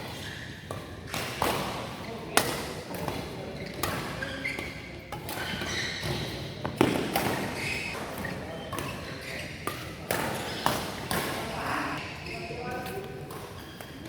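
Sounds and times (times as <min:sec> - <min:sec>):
rackets striking shuttlecock: 0:00.6 - 0:11.6.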